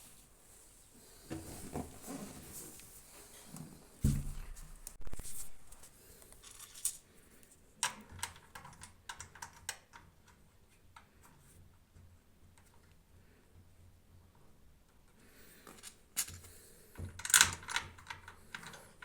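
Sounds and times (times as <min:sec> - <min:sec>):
plastic parts thumping: 0:04.0 - 0:05.3.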